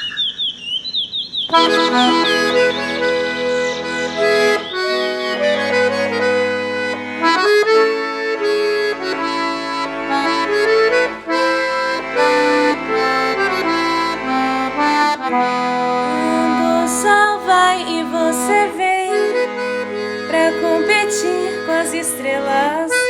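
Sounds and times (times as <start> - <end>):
bird chirps: 0.0 - 5.4
bass accompaniment: 1.5 - 21.3
accordion melody: 1.5 - 23.0.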